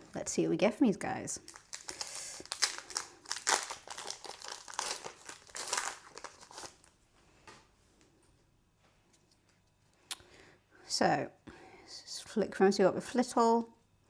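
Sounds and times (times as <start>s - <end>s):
foil wrapper crinkling and tearing: 1.4s - 7.0s.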